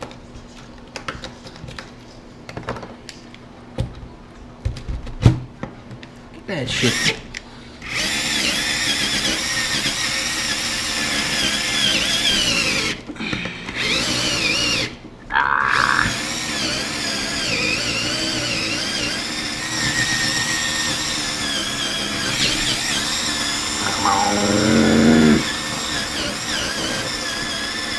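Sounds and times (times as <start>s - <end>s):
power drill with hole saw: 6.9s - 7.2s, 7.8s - 13.0s, 13.7s - 15.0s, 15.8s - 27.9s.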